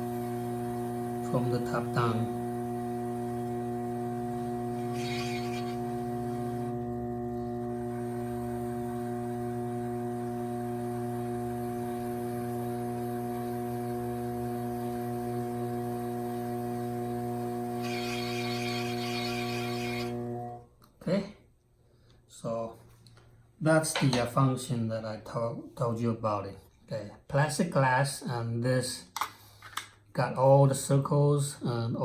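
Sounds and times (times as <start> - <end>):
potter's wheel humming: 0.0 - 20.7.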